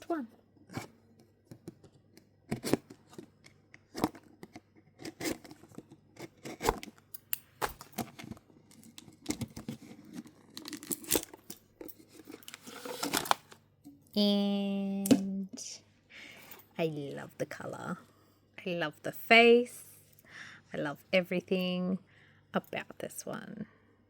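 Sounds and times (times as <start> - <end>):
packaging tearing and crinkling: 5.0 - 13.6.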